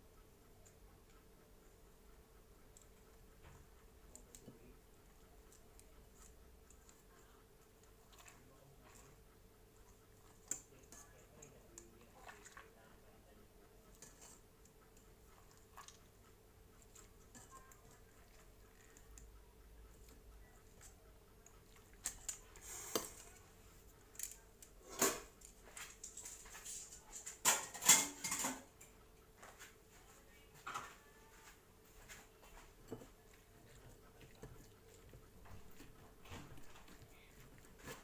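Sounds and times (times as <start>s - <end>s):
kitchenware clinking and clattering: 24.8s - 28.9s.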